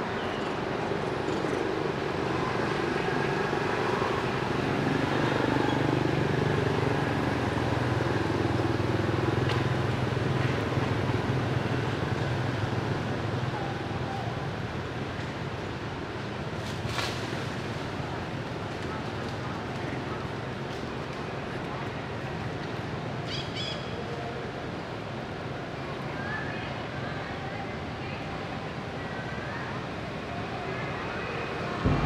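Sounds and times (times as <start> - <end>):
outdoor background noise: 0.0 - 32.0
vehicle engine humming: 31.8 - 32.0.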